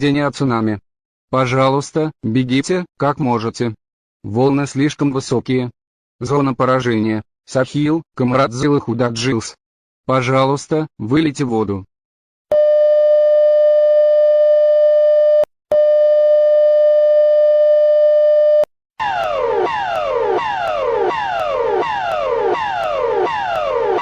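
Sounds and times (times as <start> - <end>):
falling sweep alarm: 19.0 - 24.0
long electronic alert beeps: 19.0 - 24.0.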